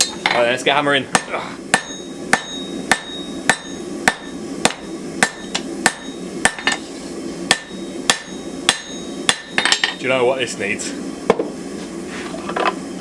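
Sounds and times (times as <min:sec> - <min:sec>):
hammer striking steel on anvil: 0:01.1 - 0:06.8, 0:07.5 - 0:10.0.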